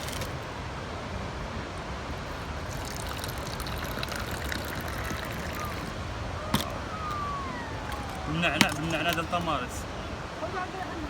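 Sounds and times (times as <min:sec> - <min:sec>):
tea pouring into a glass: 0:02.6 - 0:05.9.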